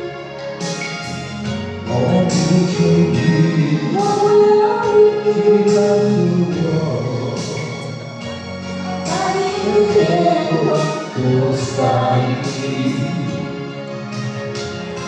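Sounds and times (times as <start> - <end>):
backing track with steady beat: 0.0 - 15.0
person singing: 1.8 - 8.3, 8.9 - 13.8.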